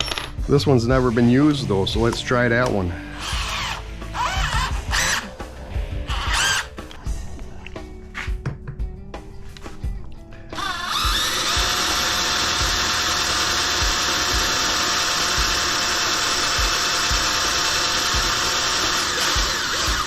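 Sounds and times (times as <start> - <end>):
electric drill whining: 3.1 - 5.4, 6.1 - 6.9, 10.6 - 20.0.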